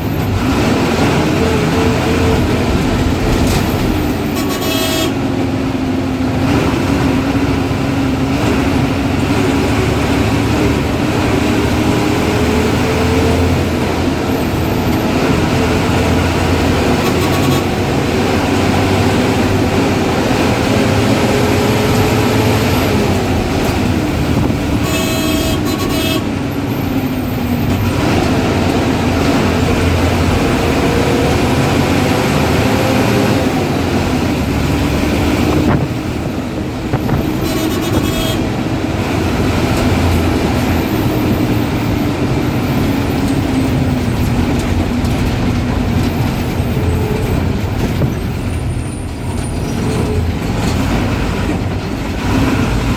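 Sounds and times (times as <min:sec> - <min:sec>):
diesel bus engine running: 0:00.0 - 0:52.9
bus horn: 0:04.1 - 0:05.8, 0:10.4 - 0:27.7, 0:36.9 - 0:44.0, 0:46.2 - 0:48.0.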